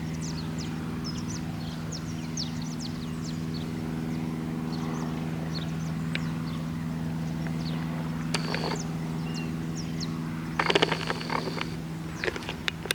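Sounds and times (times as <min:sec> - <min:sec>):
birds chirping: 0:00.0 - 0:12.9
light aircraft engine drone: 0:00.0 - 0:12.9
sharp clicks and rattles: 0:08.3 - 0:08.8, 0:10.6 - 0:12.9.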